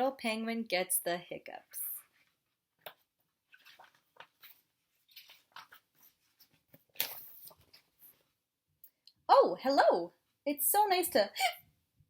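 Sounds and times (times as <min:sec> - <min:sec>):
book pages rustling: 0:02.0 - 0:08.4
page swish: 0:03.5 - 0:08.1.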